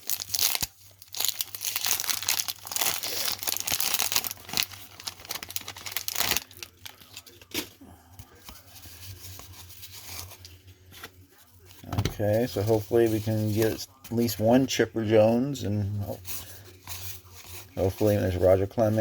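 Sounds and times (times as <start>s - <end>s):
wrapper being torn and crinkled: 0.0s - 7.7s.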